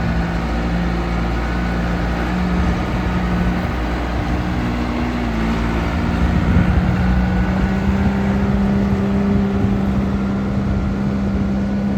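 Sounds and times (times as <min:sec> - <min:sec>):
diesel engine running: 0:00.0 - 0:11.9.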